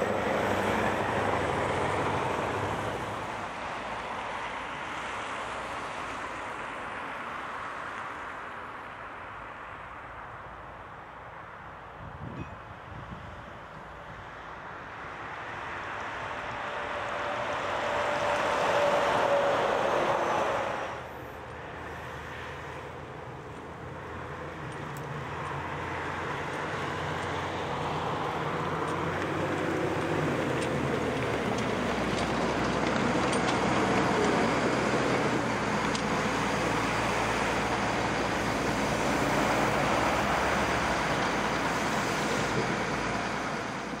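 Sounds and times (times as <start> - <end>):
vehicle passing: 0.0 - 4.0, 15.1 - 44.0
heavy traffic engine hum: 0.0 - 44.0.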